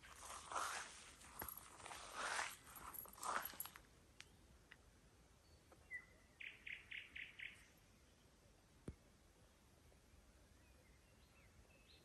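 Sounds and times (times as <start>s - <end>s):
soft swishing footsteps: 0.0s - 3.8s.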